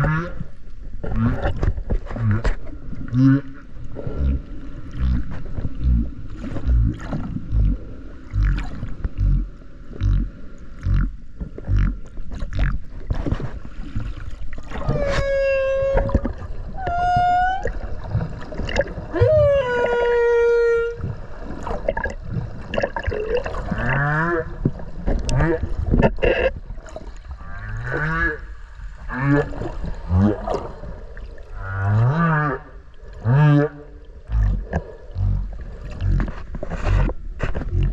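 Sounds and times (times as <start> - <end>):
whale low pulses: 2.1 - 12.9, 13.9 - 26.5, 27.4 - 37.9
whale rising moan: 14.6 - 21.2
whale pitched cries: 14.8 - 18.3, 19.1 - 21.1.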